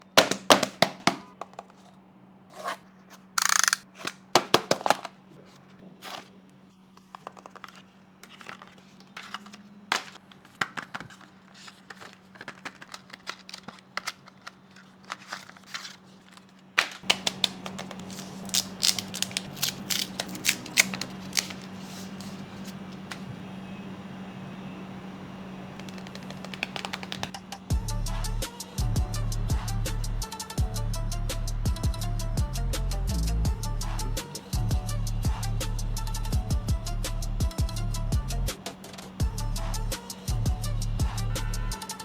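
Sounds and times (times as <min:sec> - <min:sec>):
cardboard and plastic handling: 0:00.0 - 0:23.5, 0:25.8 - 0:27.4
faint steady hum: 0:00.0 - 0:42.0.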